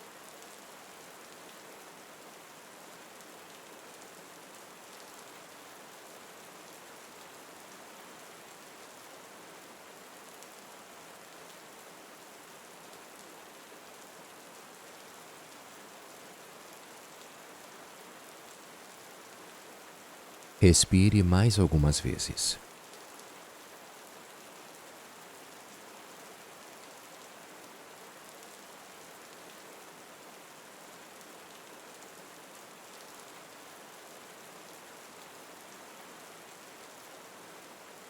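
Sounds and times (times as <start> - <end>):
soft rain falling: 0.0 - 38.0.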